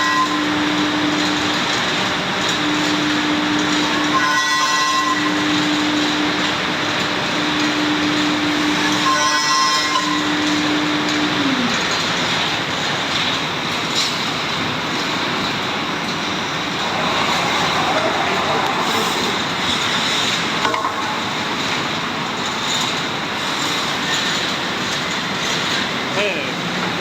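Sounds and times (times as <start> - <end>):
spindle whine: 14.0 - 24.2.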